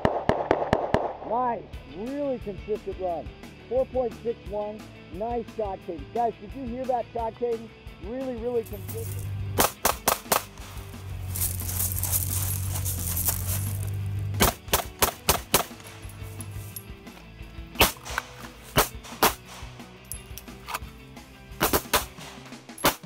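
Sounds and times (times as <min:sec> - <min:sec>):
handgun shots: 0:09.6 - 0:10.8, 0:14.4 - 0:16.1, 0:17.8 - 0:19.9, 0:21.6 - 0:23.0.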